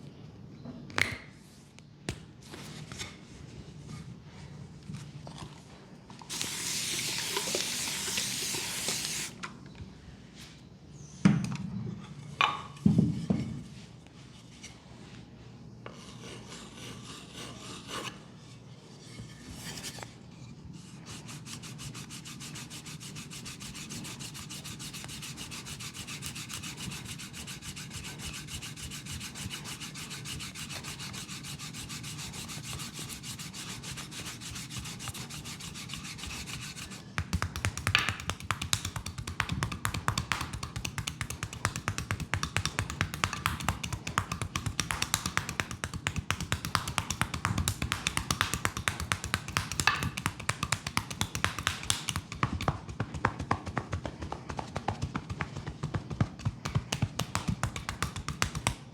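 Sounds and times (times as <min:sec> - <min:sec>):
rubbing over skin: 0:36.4 - 0:52.5, 0:56.7 - 0:58.8.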